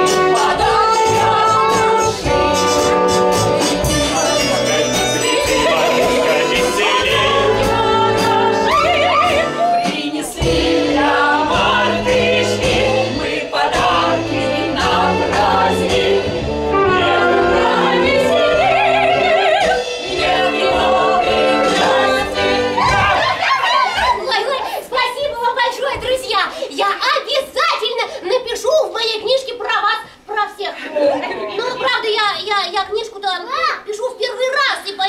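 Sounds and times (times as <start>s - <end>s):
orchestral accompaniment: 0.0s - 23.2s
voices singing with vibrato: 0.0s - 25.3s.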